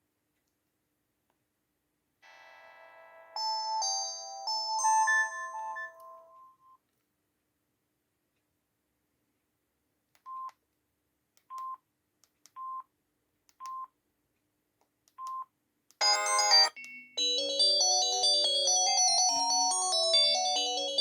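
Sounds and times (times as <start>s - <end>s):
polyphonic ringtone melody: 3.4s - 6.4s, 16.0s - 21.0s.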